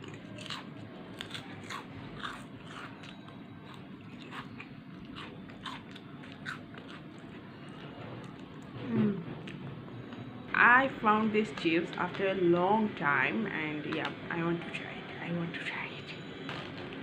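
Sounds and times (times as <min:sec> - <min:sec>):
crunching crisp chips: 0:00.0 - 0:08.7.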